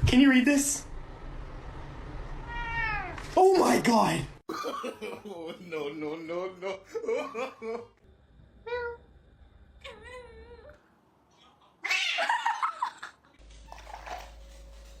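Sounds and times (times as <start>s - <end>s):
cat meowing: 2.4s - 3.2s.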